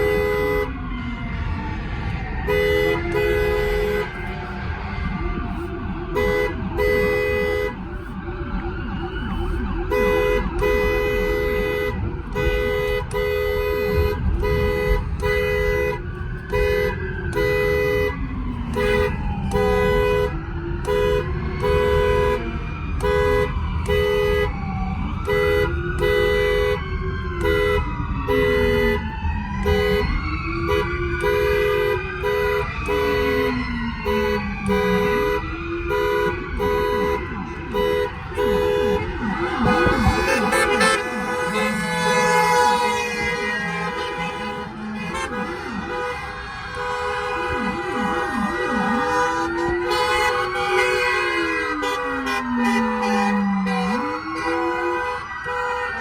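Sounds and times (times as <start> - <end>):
emergency sirens wailing: 0.0 - 56.0
vehicle horn short blasts: 37.8 - 39.0, 39.6 - 46.2.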